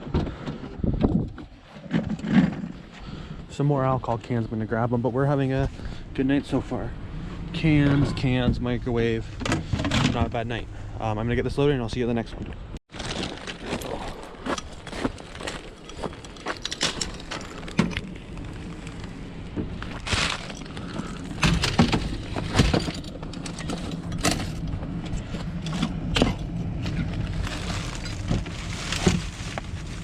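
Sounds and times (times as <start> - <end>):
scrap metal clattering: 19.6 - 30.0.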